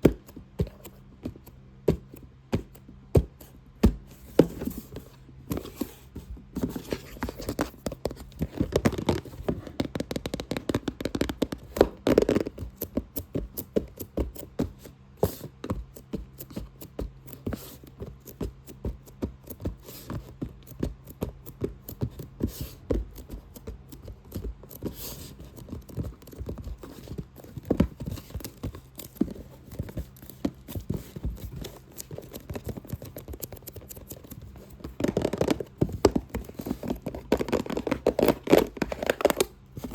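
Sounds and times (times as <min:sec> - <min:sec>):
tapping and scratching on a box: 0:00.0 - 0:39.9.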